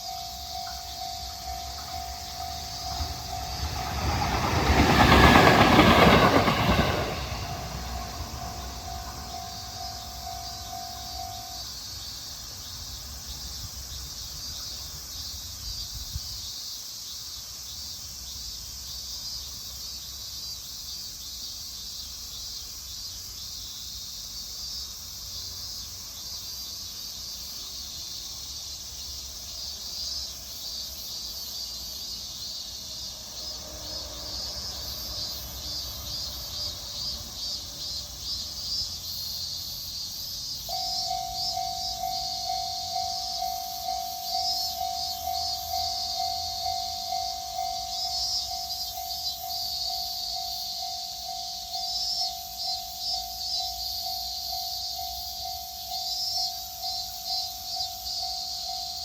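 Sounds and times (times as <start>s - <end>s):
insects chirping: 0.0s - 59.0s.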